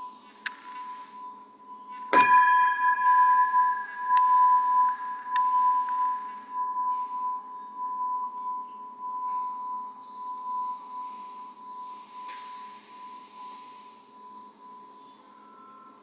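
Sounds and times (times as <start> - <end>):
struck metal pipe ringing: 1.9 - 9.8.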